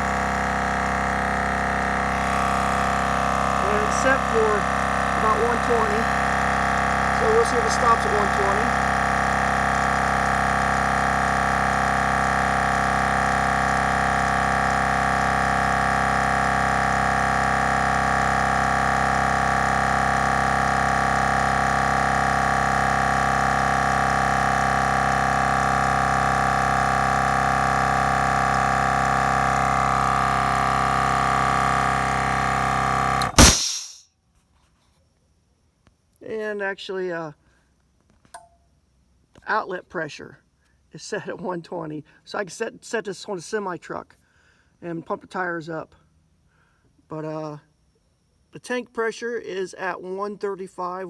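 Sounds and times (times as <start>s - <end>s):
air compressor running: 0.0s - 34.0s
compressor shutting off: 0.0s - 34.0s.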